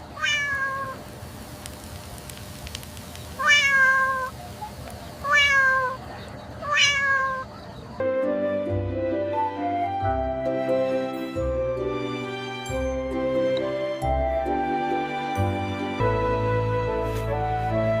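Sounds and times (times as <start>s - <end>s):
cat meowing: 0.1s - 1.0s, 3.4s - 4.3s, 5.2s - 6.0s, 6.6s - 7.5s.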